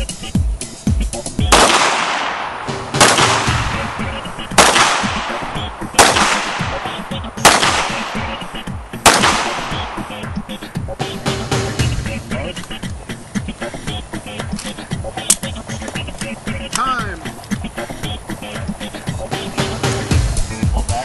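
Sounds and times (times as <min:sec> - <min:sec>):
background music: 0:00.0 - 0:21.0
pistol shots echoing: 0:01.5 - 0:10.6.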